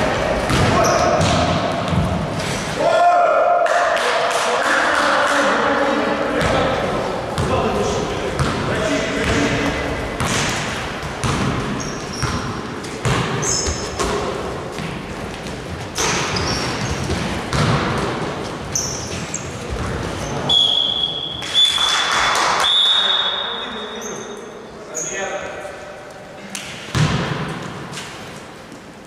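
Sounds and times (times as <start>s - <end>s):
basketball bouncing on court: 0.3s - 2.3s, 6.4s - 20.2s, 26.9s - 27.7s
shoe squeaks: 11.8s - 12.5s, 13.4s - 14.0s, 16.2s - 17.1s, 18.7s - 19.6s, 22.9s - 25.3s
shrill whistle tone: 20.5s - 22.0s, 22.6s - 24.2s.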